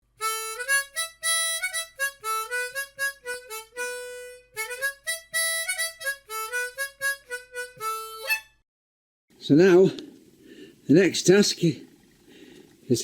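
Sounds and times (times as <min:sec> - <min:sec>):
harmonica melody: 0:00.0 - 0:08.6.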